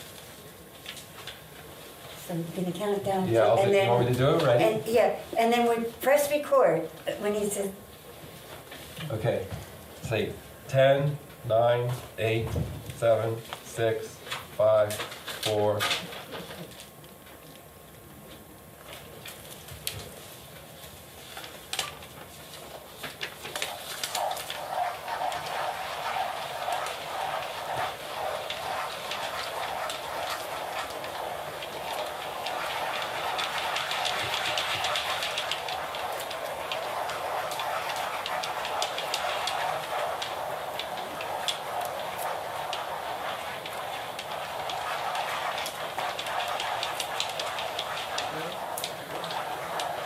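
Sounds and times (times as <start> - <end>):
pens scratching on paper: 21.2 - 50.0.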